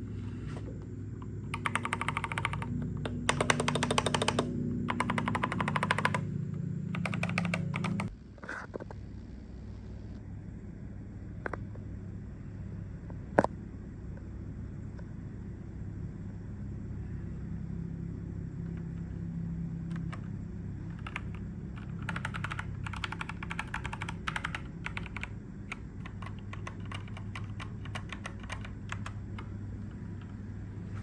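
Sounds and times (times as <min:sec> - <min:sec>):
steady low hum: 0:00.0 - 0:31.0
mechanical keyboard typing: 0:01.4 - 0:08.1, 0:19.9 - 0:30.5.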